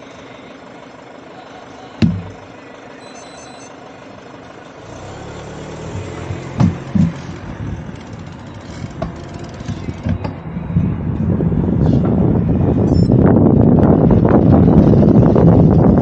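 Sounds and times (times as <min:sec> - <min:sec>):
vehicle engine running: 0:00.0 - 0:16.0
sharp knock: 0:02.0 - 0:02.4
thumps: 0:02.0 - 0:02.4, 0:05.9 - 0:11.0.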